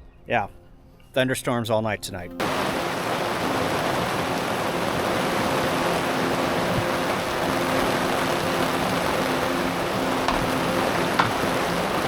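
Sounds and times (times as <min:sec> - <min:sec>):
steady rain hiss: 0:02.4 - 0:12.0.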